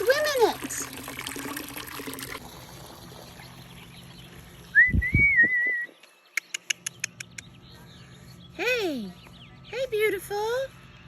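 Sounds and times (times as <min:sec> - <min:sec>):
person whistling: 0:04.7 - 0:06.0
dull low thumps: 0:04.8 - 0:05.9.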